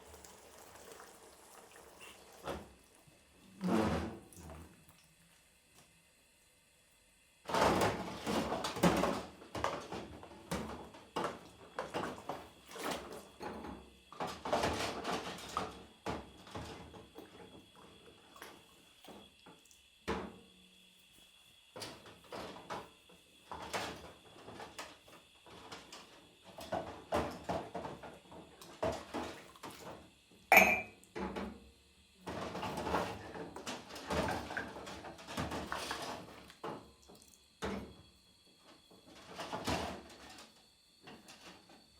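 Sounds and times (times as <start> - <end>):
dishes knocking and clinking: 30.5 - 31.0.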